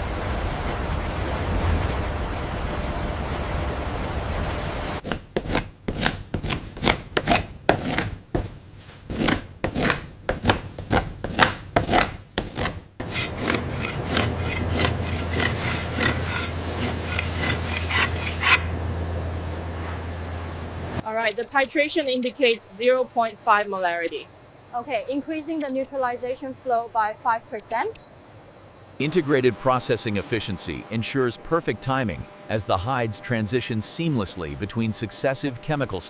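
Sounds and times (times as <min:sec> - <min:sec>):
low steady hum: 0:00.0 - 0:05.1, 0:13.0 - 0:36.0
blade scraping hide: 0:05.0 - 0:08.2, 0:08.8 - 0:20.1.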